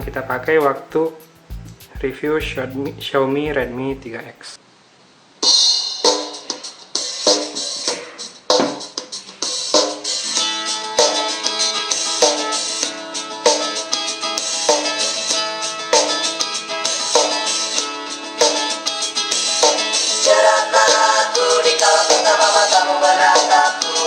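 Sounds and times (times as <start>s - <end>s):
pop song from small speaker: 0.0s - 4.2s, 7.0s - 24.0s.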